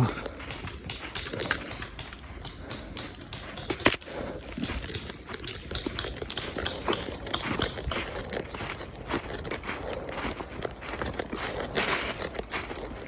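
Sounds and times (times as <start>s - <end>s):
footsteps crunching leaves: 0.0s - 13.0s
twig snapping: 0.3s - 9.7s.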